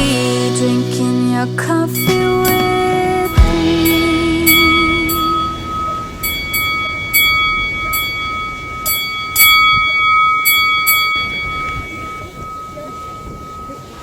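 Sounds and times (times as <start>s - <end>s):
small metal bell ringing: 3.9s - 14.0s.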